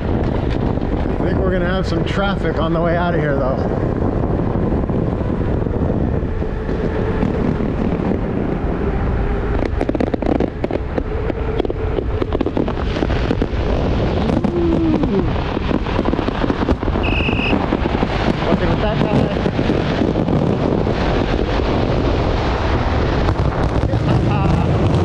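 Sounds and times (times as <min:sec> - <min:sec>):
fireworks popping and crackling: 0:00.0 - 0:25.0
wind rumble on microphone: 0:00.0 - 0:25.0
short high beep: 0:17.0 - 0:17.6.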